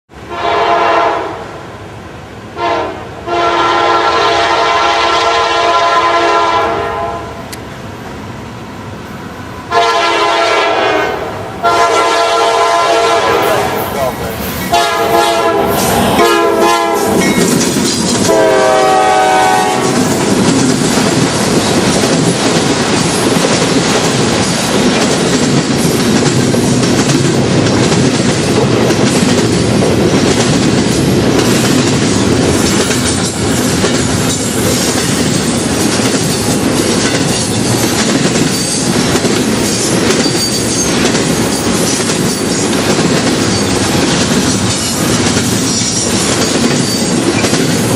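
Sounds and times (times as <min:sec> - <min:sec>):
locomotive horn blasts: 0:00.2 - 0:01.4, 0:02.6 - 0:07.4, 0:09.7 - 0:13.9, 0:14.7 - 0:17.4, 0:18.2 - 0:20.2
train wheels clattering over rail joints: 0:17.1 - 0:47.9.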